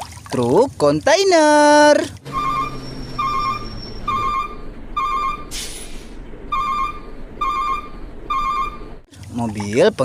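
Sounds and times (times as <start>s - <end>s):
short warbling electronic beep: 2.3s - 5.5s, 6.5s - 9.0s
brief hiss: 5.5s - 6.2s.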